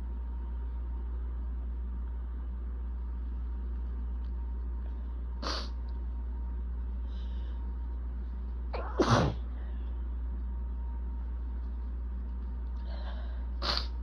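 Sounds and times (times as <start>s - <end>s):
steady low hum: 0.0s - 14.0s
person sneezing: 8.8s - 9.4s.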